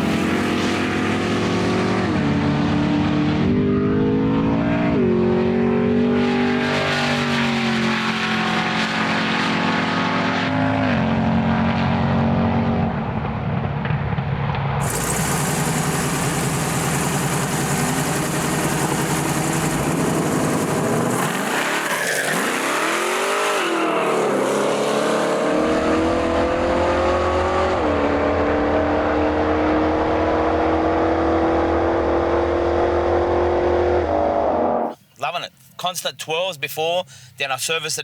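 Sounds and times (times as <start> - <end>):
drag car engine running hard: 0.0 - 2.0, 14.8 - 23.3.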